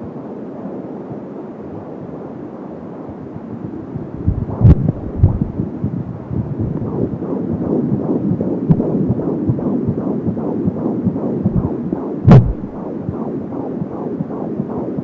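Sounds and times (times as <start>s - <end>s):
fetal heartbeat whooshing pulse: 4.2s - 15.0s
loud knock: 12.3s - 12.8s.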